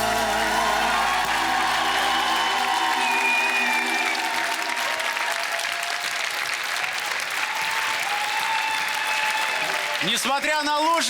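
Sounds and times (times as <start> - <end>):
music held notes: 0.0 - 5.6
studio audience applauding: 0.0 - 11.0.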